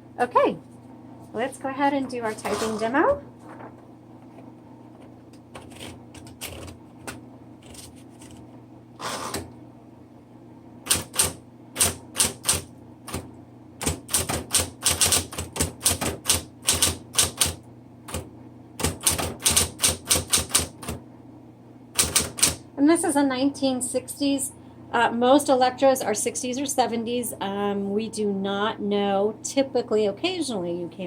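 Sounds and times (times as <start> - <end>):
typewriter motor hum: 5.5 - 9.6, 10.8 - 21.0, 21.9 - 22.6
typewriter keys clacking: 13.8 - 17.6, 18.8 - 20.8, 22.0 - 22.6.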